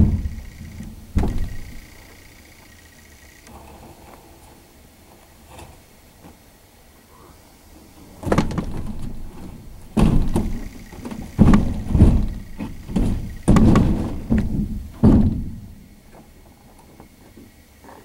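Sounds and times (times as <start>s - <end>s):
scrap banging into truck bed: 0.0s - 1.8s, 8.0s - 15.8s.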